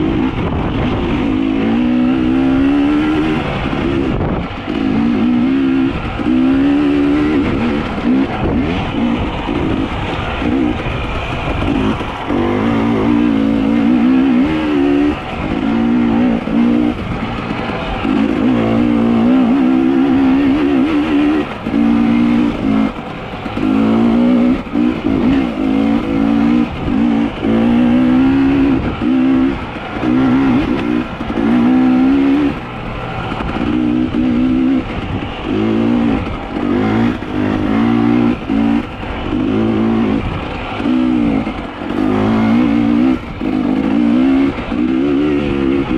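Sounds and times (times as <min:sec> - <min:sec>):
small petrol engine revving: 0:00.0 - 0:45.9.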